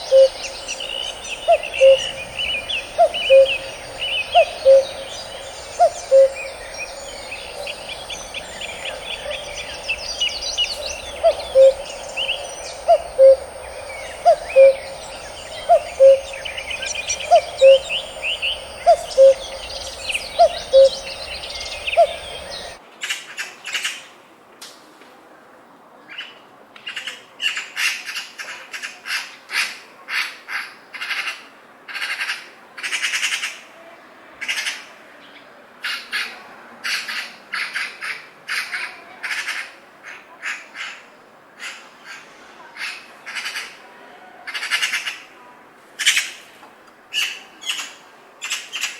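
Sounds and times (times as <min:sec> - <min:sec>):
bird chirps and calls: 0:00.0 - 0:22.8
low two-note bird call: 0:00.0 - 0:22.8
songbirds singing and trilling: 0:00.0 - 0:22.8.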